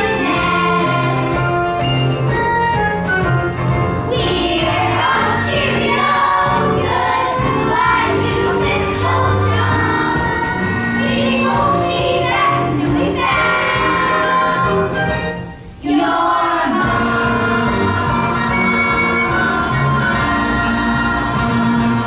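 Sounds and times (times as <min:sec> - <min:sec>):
choir singing: 0:00.0 - 0:01.8, 0:04.1 - 0:22.0
sustained instrumental accompaniment: 0:16.7 - 0:22.0.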